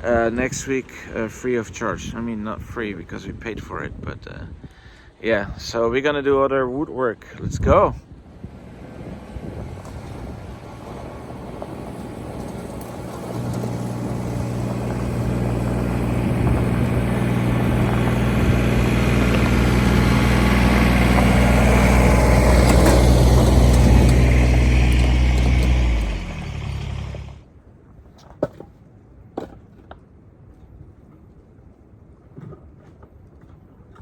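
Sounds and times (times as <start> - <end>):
vehicle engine humming: 8.2 - 27.4.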